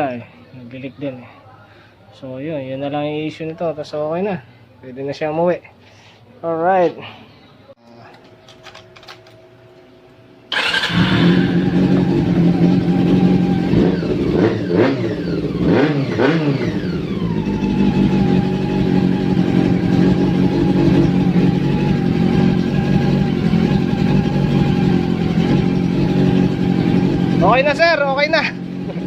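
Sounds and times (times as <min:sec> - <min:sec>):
motorcycle engine starting and revving: 0:10.5 - 0:29.0.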